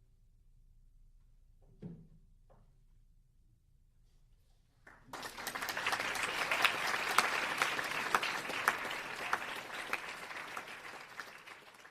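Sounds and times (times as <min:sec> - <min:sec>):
audience applauding: 0:05.0 - 0:11.9.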